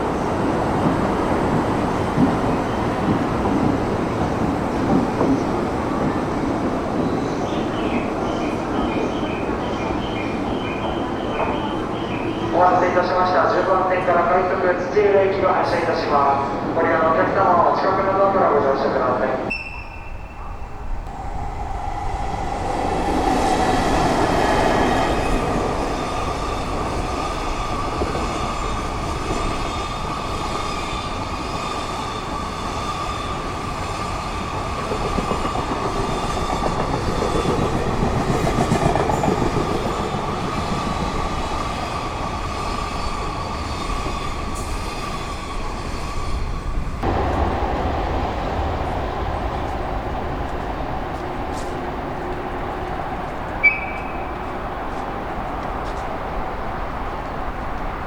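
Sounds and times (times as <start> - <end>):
train running with high whine: 0.0 - 58.0
train wheels clicking: 21.0 - 56.2.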